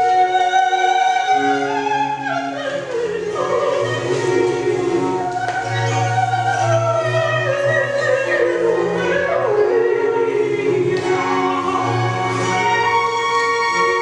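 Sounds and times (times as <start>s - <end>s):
person singing: 0.0s - 14.0s
slow operatic music: 0.0s - 14.0s.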